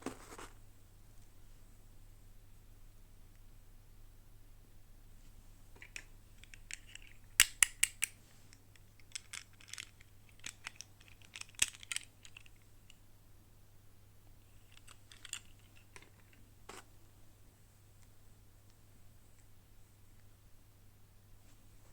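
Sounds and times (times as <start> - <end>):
plastic clicks: 5.8 - 8.2.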